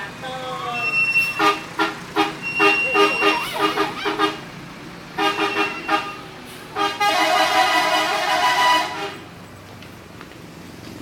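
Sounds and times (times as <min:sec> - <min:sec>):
musical air horn beeps: 0:02.3 - 0:04.0, 0:05.2 - 0:09.0.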